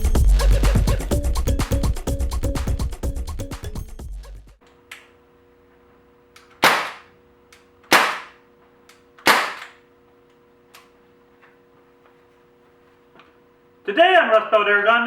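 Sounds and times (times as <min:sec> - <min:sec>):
air rifle shots: 0:06.6 - 0:07.1, 0:07.9 - 0:08.4, 0:09.2 - 0:09.7.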